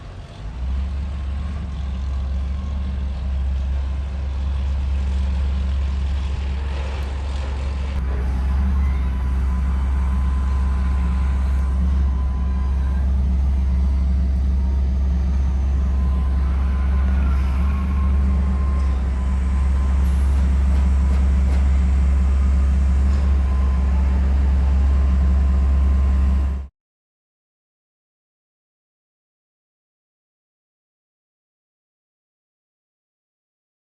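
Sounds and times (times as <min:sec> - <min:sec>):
motor vehicle engine rumbling: 0:00.0 - 0:26.7.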